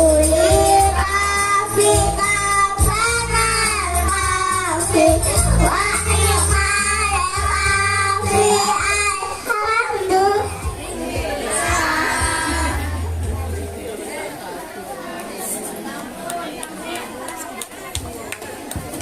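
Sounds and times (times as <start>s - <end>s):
child singing: 0.0s - 12.9s
musical accompaniment with bass: 0.0s - 13.8s.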